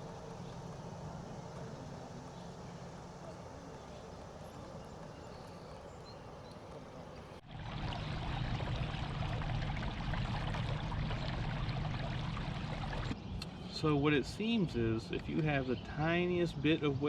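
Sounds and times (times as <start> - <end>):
water lapping against kayak hull: 0.0 - 13.2
steady low hum: 0.0 - 15.2.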